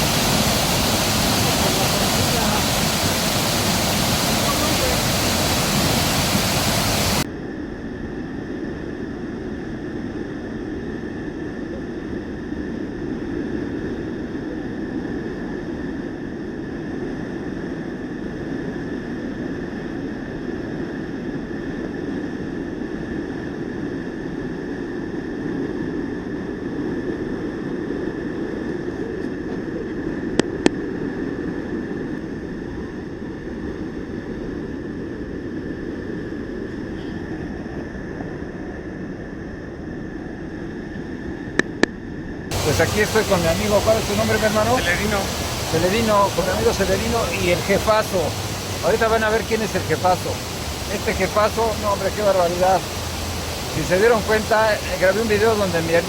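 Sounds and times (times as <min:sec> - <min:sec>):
waterfall roaring: 0:00.0 - 0:07.2, 0:42.5 - 0:56.0.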